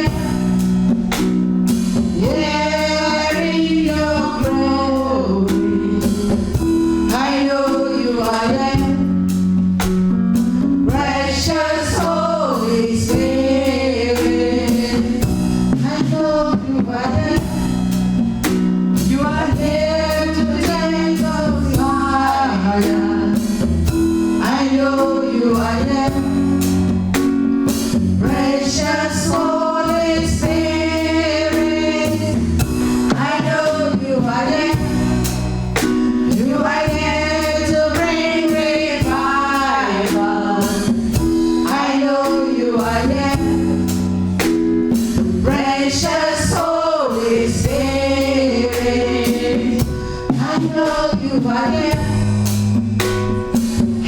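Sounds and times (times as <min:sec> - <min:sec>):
person singing gospel: 0:00.0 - 0:00.9, 0:01.9 - 0:09.3, 0:10.6 - 0:18.0, 0:18.9 - 0:26.9, 0:27.6 - 0:44.2, 0:44.9 - 0:52.5
bass guitar: 0:00.0 - 0:54.0
drum kit beat: 0:00.0 - 0:54.0.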